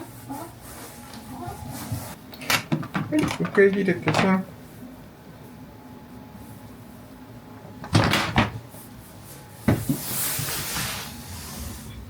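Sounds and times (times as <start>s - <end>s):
household knocks and clatter: 7.8s - 8.7s, 9.6s - 10.1s.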